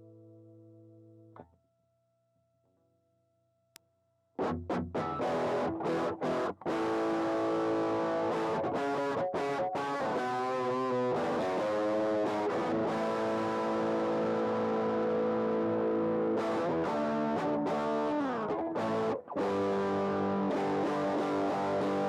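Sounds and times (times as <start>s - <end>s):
distorted electric guitar chords: 4.4s - 22.0s.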